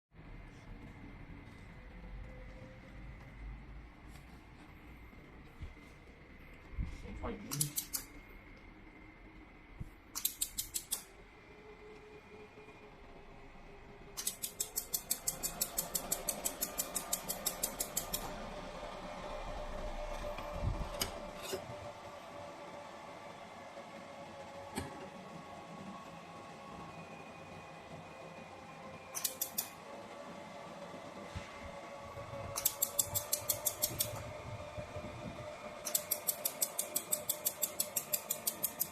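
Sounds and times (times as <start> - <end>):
steady machine hum: 0.2 - 38.9
laser welder pulse clicks: 7.5 - 8.2, 10.1 - 11.1, 14.2 - 18.3, 29.1 - 29.8, 32.5 - 34.2, 35.8 - 38.9.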